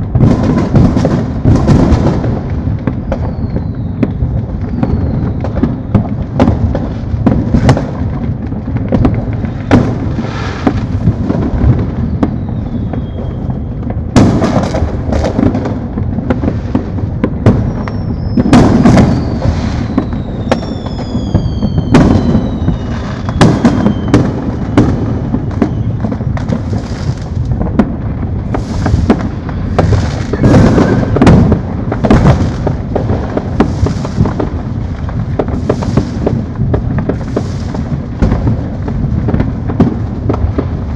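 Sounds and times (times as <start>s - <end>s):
distant fireworks booms and pops: 0.0s - 40.9s
firework whistles falling in pitch: 3.0s - 6.1s, 9.6s - 13.8s, 17.6s - 26.2s, 28.5s - 32.4s
sharp nearby firework bangs: 8.8s - 13.6s, 14.2s - 38.6s.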